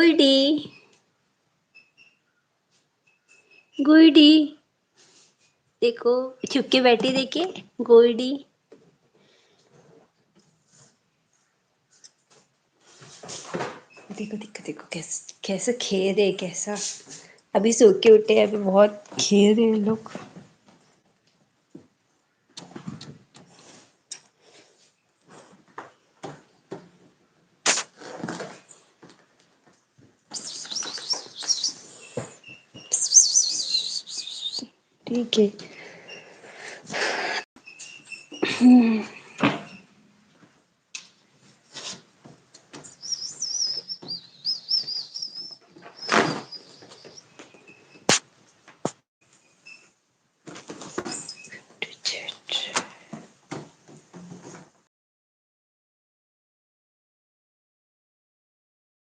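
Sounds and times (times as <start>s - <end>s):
bird chirping trill: 30.3s - 34.7s, 42.9s - 48.1s
knocks and rustles: 50.4s - 51.3s, 52.8s - 54.8s.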